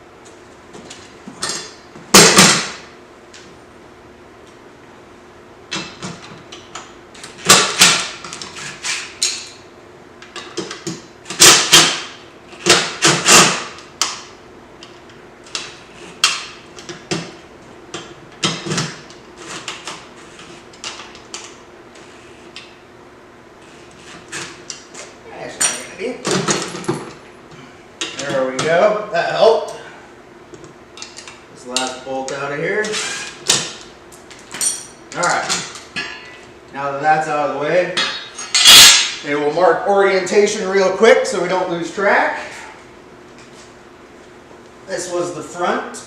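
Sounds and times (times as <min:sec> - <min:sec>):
hand tools clanking on metal: 0:25.5 - 0:27.2, 0:38.0 - 0:39.2.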